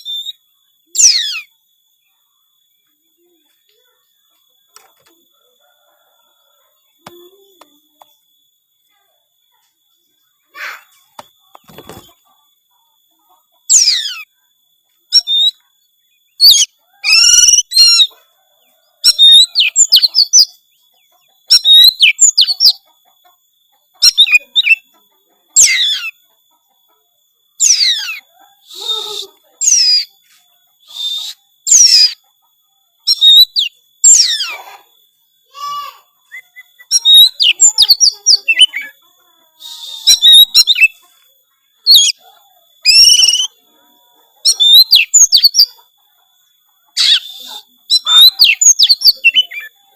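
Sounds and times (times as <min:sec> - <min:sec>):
bird singing whistles and trills: 0:00.0 - 0:01.6, 0:13.7 - 0:14.3, 0:15.1 - 0:18.1, 0:19.0 - 0:20.6, 0:21.5 - 0:22.8, 0:24.0 - 0:24.9, 0:25.6 - 0:26.2, 0:27.6 - 0:30.1, 0:30.8 - 0:32.2, 0:33.0 - 0:34.6, 0:36.2 - 0:39.0, 0:39.6 - 0:41.0, 0:41.8 - 0:42.2, 0:42.8 - 0:43.6, 0:44.5 - 0:45.8, 0:47.0 - 0:49.7.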